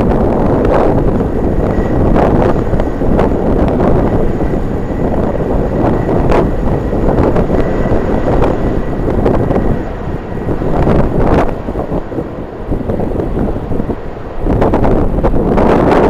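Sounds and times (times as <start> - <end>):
faint high whine: 0.0 - 16.0
wind buffeting microphone: 0.0 - 16.0.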